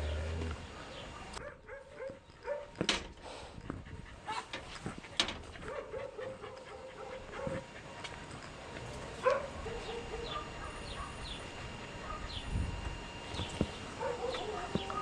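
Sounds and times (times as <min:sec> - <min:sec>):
dog barking: 0:00.8 - 0:02.7, 0:05.6 - 0:07.6, 0:09.2 - 0:11.3, 0:12.0 - 0:12.4, 0:14.0 - 0:15.0.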